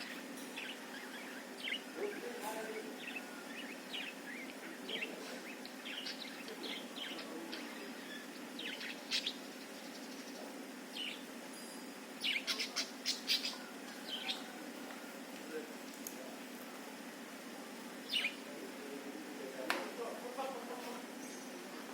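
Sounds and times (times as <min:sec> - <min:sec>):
steady low hum: 0:00.0 - 0:21.9
budgerigar chirping: 0:12.2 - 0:14.4.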